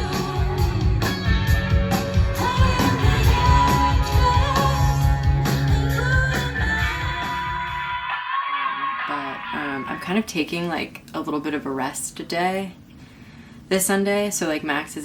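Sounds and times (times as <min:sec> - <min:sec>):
upbeat rock song with vocals: 0:00.0 - 0:08.2.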